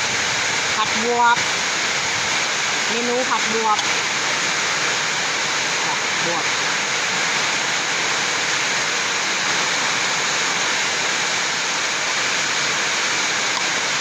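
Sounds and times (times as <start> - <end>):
heavy storm rain: 0.0 - 14.0.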